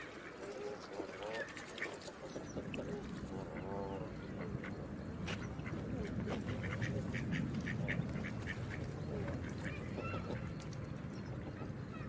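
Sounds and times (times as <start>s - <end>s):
rushing water: 0.0s - 4.2s.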